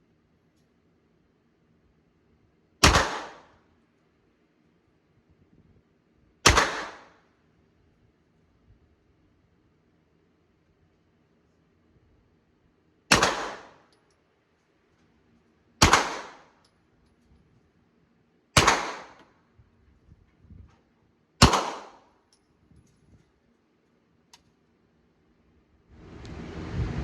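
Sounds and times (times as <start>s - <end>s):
gunshots with ringing tail: 2.8s - 3.5s, 6.4s - 7.1s, 13.1s - 13.8s, 15.8s - 16.4s, 18.6s - 19.2s, 21.4s - 22.0s
faint small clicks: 13.8s - 15.6s, 22.2s - 24.8s.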